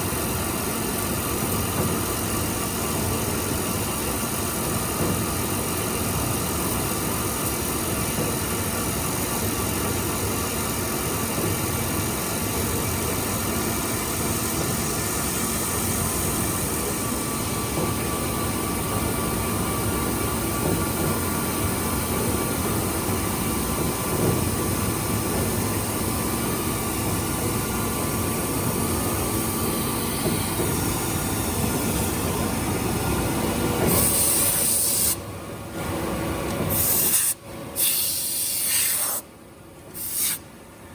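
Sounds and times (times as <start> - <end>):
burst of hiss: 33.9 - 35.2, 36.7 - 39.3, 40.0 - 40.4.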